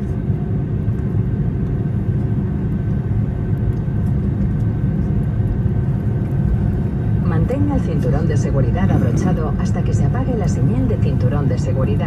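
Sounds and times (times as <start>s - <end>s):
airplane cabin rumble: 0.0s - 12.0s
faint steady tones: 6.7s - 12.0s.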